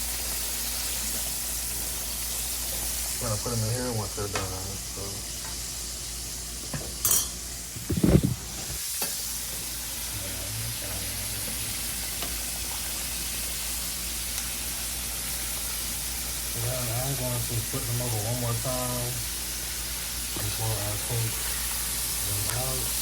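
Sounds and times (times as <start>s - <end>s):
chicken deep-frying in grease: 0.0s - 23.0s
brief loud thump: 7.8s - 8.8s.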